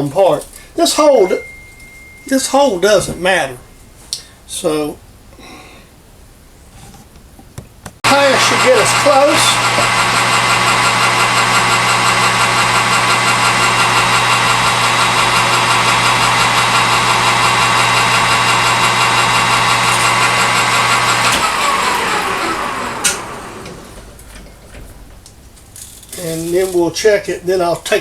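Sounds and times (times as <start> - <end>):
metal lathe humming and whining: 8.0 - 24.3.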